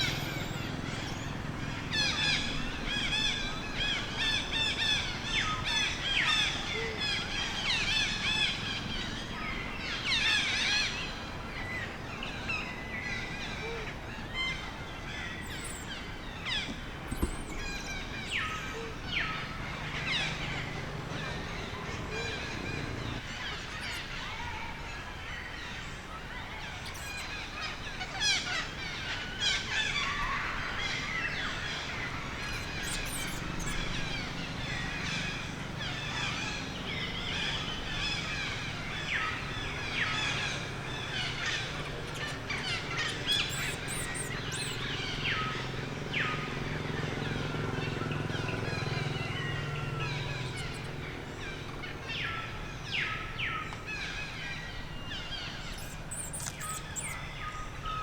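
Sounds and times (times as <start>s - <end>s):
baby monkey cries and squeals: 0.0s - 7.0s, 15.4s - 18.8s, 23.4s - 24.2s, 26.7s - 27.4s, 32.2s - 34.4s, 39.8s - 45.0s, 50.0s - 51.1s, 55.6s - 57.2s.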